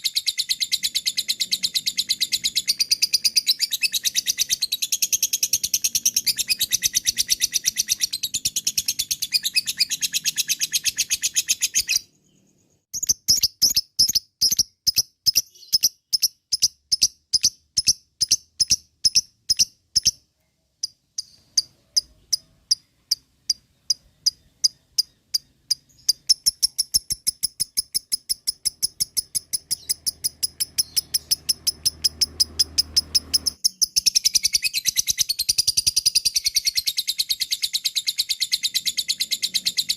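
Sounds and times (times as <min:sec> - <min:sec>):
lovebird chattering trills: 0:00.0 - 0:12.1, 0:20.8 - 0:39.9.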